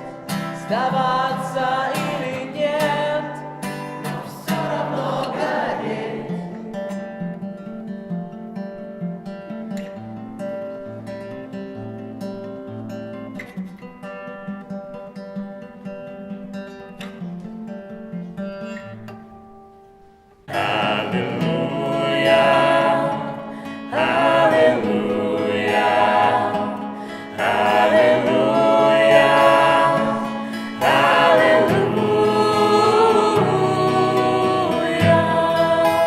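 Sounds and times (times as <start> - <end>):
wordless singing: 0.0 - 7.0, 20.5 - 36.0
acoustic guitar strumming: 0.0 - 36.0.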